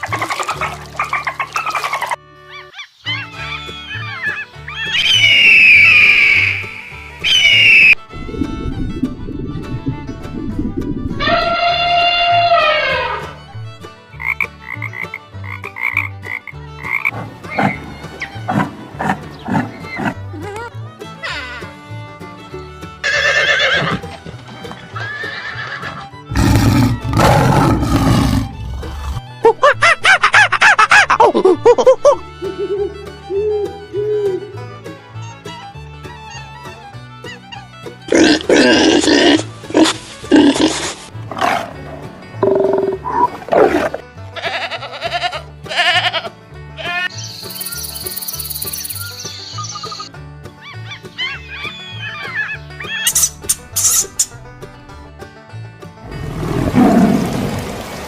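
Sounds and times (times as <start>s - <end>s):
light background music: 0.0s - 57.7s
horse neighing: 23.0s - 24.1s, 25.0s - 29.2s
goat-like bleats: 44.4s - 47.2s.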